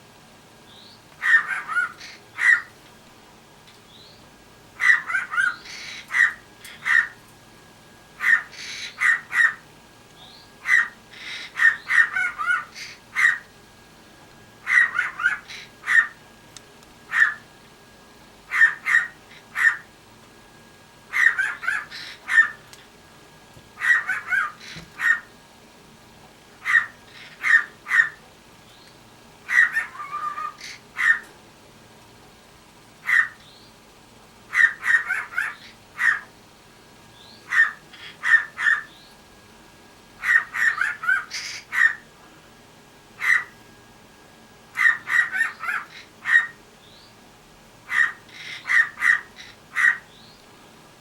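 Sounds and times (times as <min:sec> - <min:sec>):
bird's harsh bark-like calls: 0:00.7 - 0:02.8, 0:04.8 - 0:07.2, 0:08.2 - 0:13.5, 0:14.6 - 0:16.2, 0:17.1 - 0:17.5, 0:18.5 - 0:19.9, 0:21.1 - 0:22.7, 0:23.8 - 0:25.4, 0:26.6 - 0:28.2, 0:29.4 - 0:31.4, 0:33.0 - 0:33.7, 0:34.5 - 0:36.4, 0:37.2 - 0:39.2, 0:40.2 - 0:42.1, 0:43.2 - 0:43.6, 0:44.7 - 0:47.2, 0:47.8 - 0:50.4.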